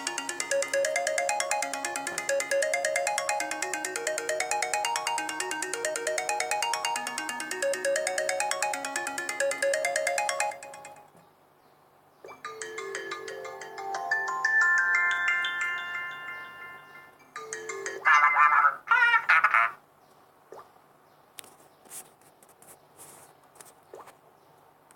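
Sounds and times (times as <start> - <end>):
phone ringtones: 0.0 - 11.1.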